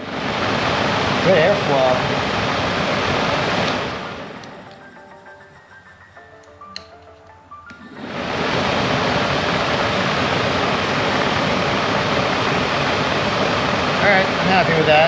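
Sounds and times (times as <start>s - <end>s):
heater blower motor running: 0.0s - 15.0s
rush of air: 7.8s - 14.0s.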